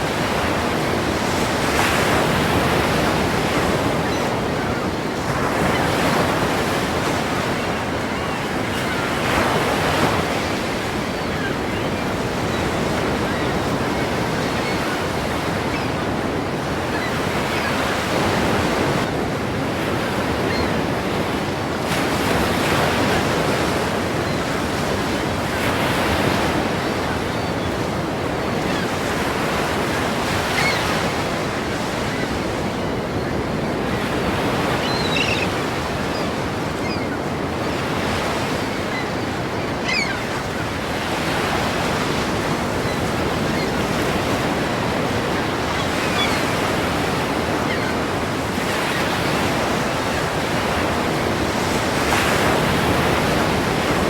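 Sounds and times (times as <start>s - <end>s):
ocean waves breaking: 0.0s - 54.0s.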